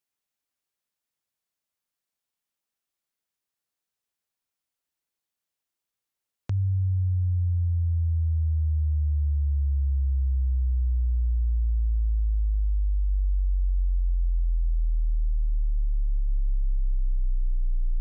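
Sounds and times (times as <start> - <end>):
deep sine tone sweeping lower: 6.5 - 18.0.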